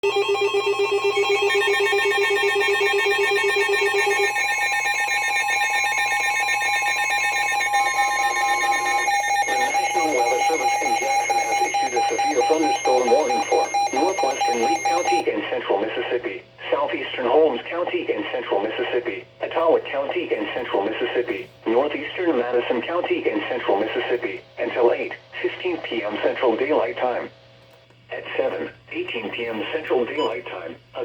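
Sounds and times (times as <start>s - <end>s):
electronic alert tones: 3.2s - 15.2s
broadcast voice reading: 9.3s - 27.4s, 28.1s - 31.0s.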